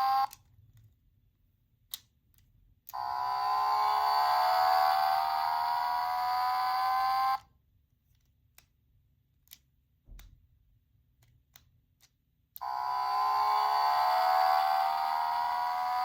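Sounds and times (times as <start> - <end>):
buzzy electronic tone rising: 0.0 - 0.3, 3.0 - 7.4, 12.6 - 16.0
small clicks: 0.0 - 16.0.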